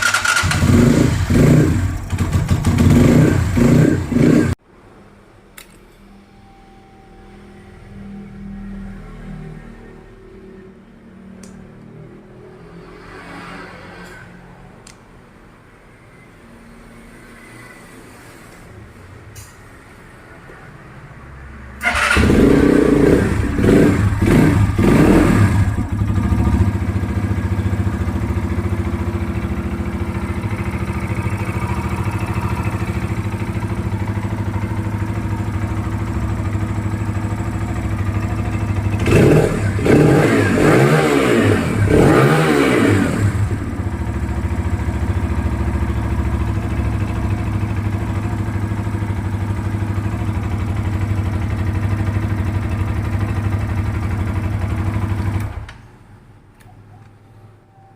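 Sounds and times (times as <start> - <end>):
motorcycle engine revving and idling: 0.0 - 4.6, 21.8 - 55.8.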